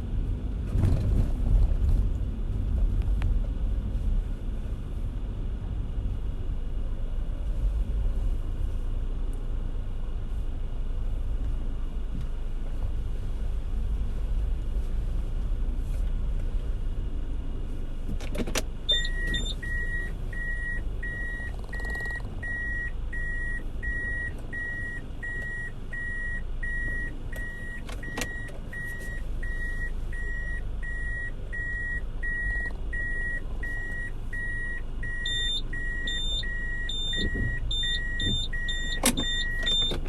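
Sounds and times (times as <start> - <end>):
low rumble of car: 0.0 - 40.0
car warning chime beeping: 18.8 - 40.0.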